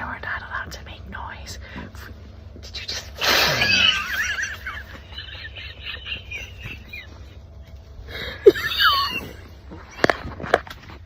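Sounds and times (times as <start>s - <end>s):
stifled high-pitched giggling: 3.5s - 7.4s, 8.1s - 10.1s.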